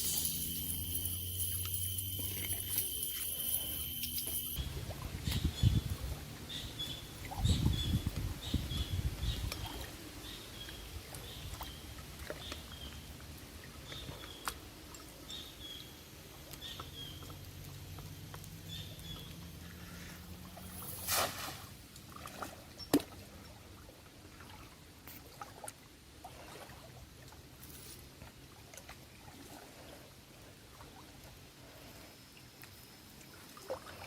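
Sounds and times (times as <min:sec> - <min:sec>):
short high calls: 0:00.0 - 0:04.6
water splashing and trickling: 0:00.0 - 0:34.0.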